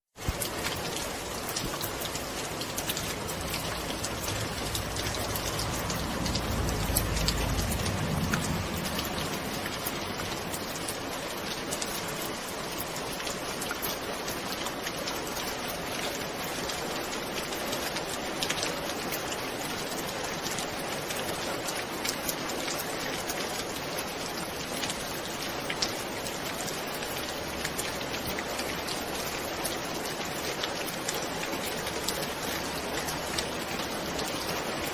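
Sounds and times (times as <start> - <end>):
raindrops ticking on surface: 0.0 - 34.9
heavy rain falling: 0.2 - 34.9
distant thunder rumble: 2.0 - 11.0.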